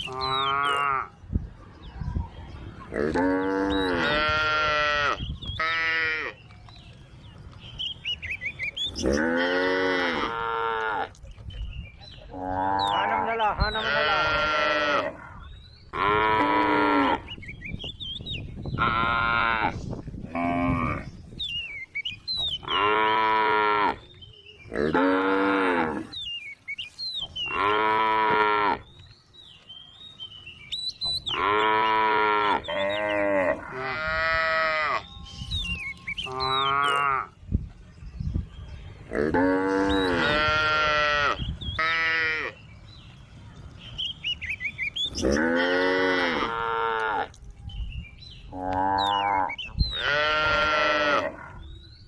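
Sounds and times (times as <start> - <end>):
cows mooing: 2.9 - 6.4, 9.0 - 11.1, 12.3 - 15.4, 16.0 - 17.3, 22.6 - 24.0, 24.7 - 26.1, 27.5 - 28.8, 31.3 - 35.2, 39.1 - 42.6, 45.1 - 47.4, 48.5 - 51.6.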